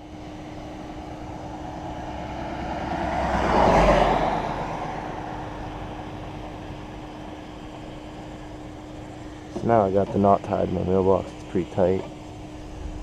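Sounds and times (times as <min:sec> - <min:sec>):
steady low hum: 0:00.0 - 0:13.0
car passing by: 0:01.3 - 0:06.6.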